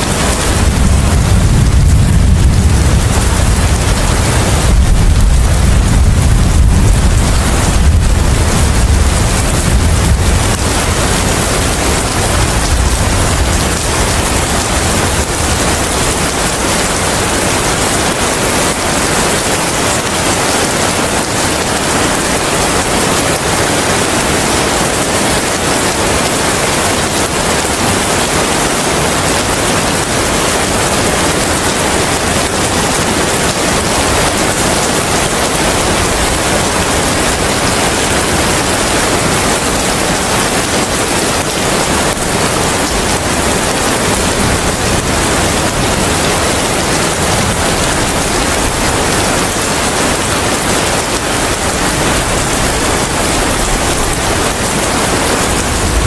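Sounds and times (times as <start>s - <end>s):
heavy rain with wind: 0.0s - 56.0s
deep low rumble: 0.4s - 15.9s.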